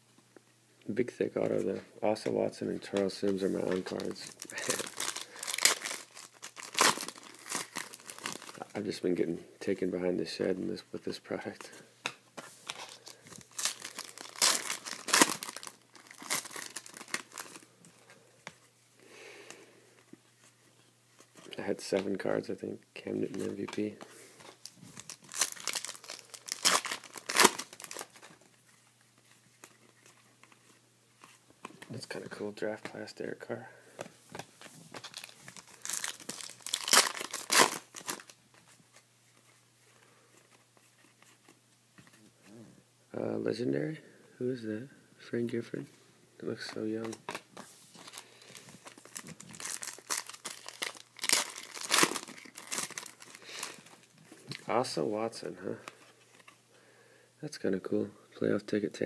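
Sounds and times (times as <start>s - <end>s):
cards rustling: 1.5s - 9.0s, 11.1s - 18.8s, 20.0s - 33.0s, 34.0s - 39.6s, 46.5s - 56.6s
foil wrapper tearing and crinkling: 3.9s - 8.6s, 12.7s - 17.6s, 24.5s - 28.3s, 35.0s - 38.4s, 48.0s - 54.1s.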